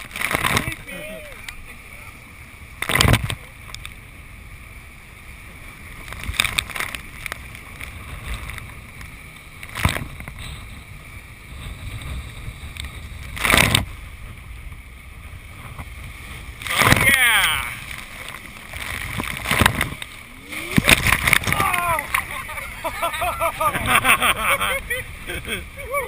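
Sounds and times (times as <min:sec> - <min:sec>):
river rapids roaring: 0:00.0 - 0:26.0
loud splashes: 0:16.4 - 0:26.0.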